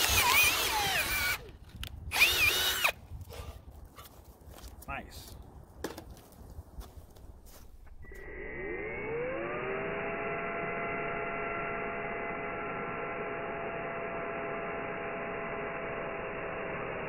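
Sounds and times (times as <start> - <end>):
cordless drill motor whining: 0.0 - 3.0, 8.0 - 17.0.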